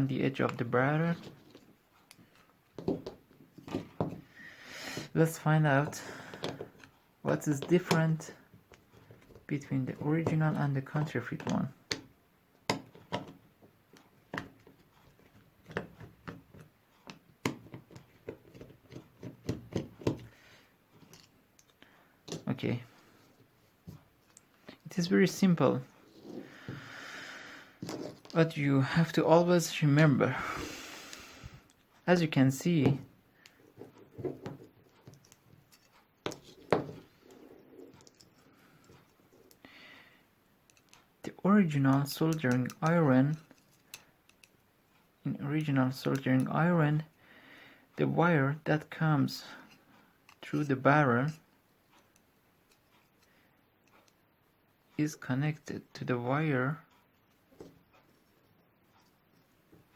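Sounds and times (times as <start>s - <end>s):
soldering irons clicking and knocking: 5.1s - 20.4s, 40.6s - 47.2s.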